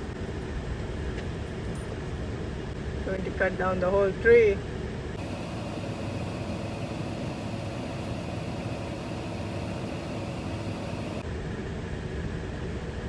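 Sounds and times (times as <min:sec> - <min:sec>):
van engine idling: 0:05.1 - 0:11.2.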